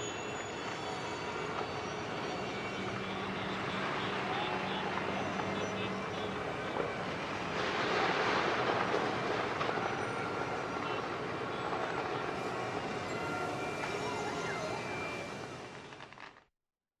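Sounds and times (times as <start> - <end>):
traffic noise: 0.0 - 16.3
faint horn-like tones: 10.0 - 15.6.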